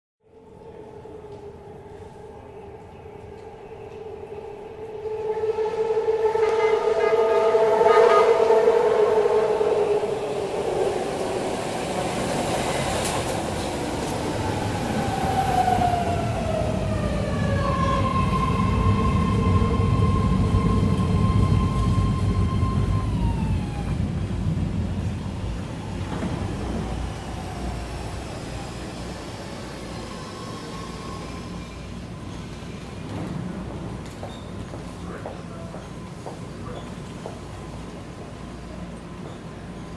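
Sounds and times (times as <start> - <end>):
metro train rumble: 0.2 - 39.9
train wheels squealing and whining: 14.8 - 23.9, 26.5 - 32.6, 34.2 - 34.7.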